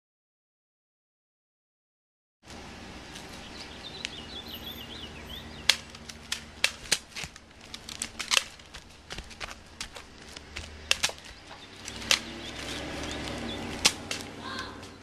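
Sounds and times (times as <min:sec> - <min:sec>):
bird chirping: 0:03.2 - 0:06.6, 0:07.7 - 0:15.0
airsoft guns popping: 0:05.6 - 0:15.0.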